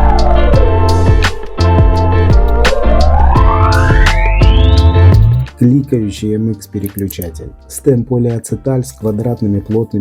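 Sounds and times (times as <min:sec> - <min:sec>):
sliding synth tone: 0:00.0 - 0:05.4
music with steady beat: 0:00.0 - 0:10.0.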